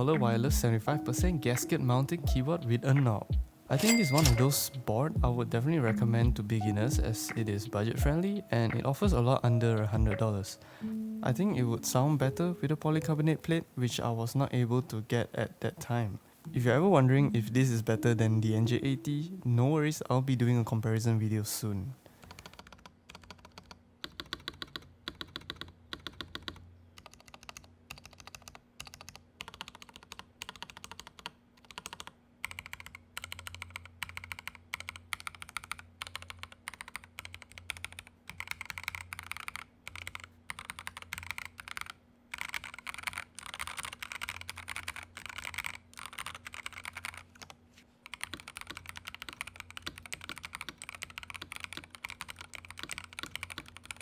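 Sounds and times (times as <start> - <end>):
mechanical keyboard typing: 0.0 - 10.5, 22.2 - 54.0.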